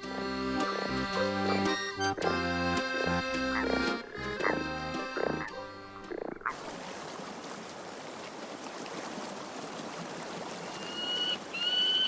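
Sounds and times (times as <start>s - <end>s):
accordion music: 0.0s - 6.5s
chorus of toads calling: 1.6s - 6.6s.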